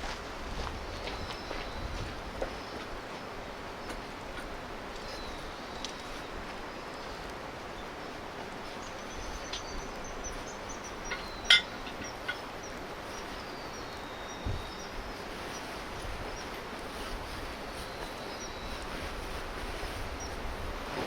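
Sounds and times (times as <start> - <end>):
outdoor ambience rush: 0.0 - 21.0
small birds whistling: 8.7 - 20.4.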